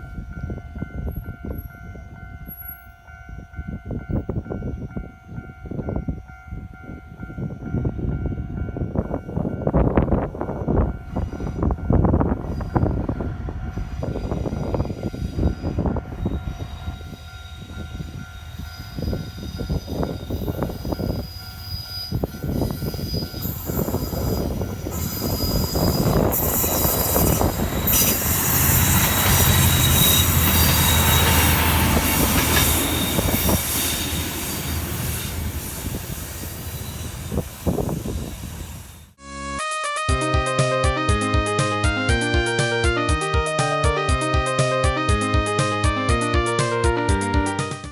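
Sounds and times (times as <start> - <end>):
train wheels squealing on rails: 0.0 - 39.2
train engine humming low: 0.0 - 47.9
level crossing alarm ringing: 0.1 - 35.1.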